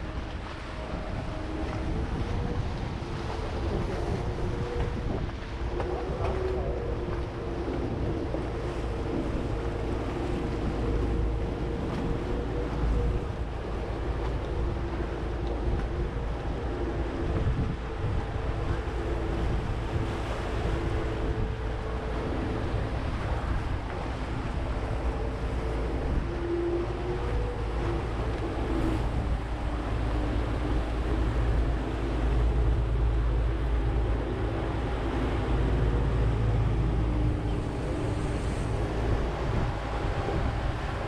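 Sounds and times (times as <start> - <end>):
boat engine running: 0.0 - 41.0
water rushing past hull: 0.0 - 41.0
wind buffeting microphone: 0.0 - 41.0.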